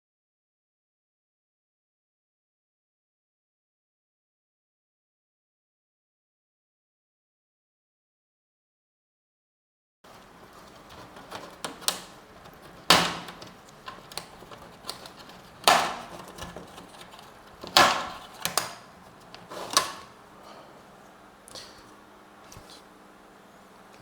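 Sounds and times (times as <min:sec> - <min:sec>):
hard plastic clacks: 0:10.1 - 0:20.7.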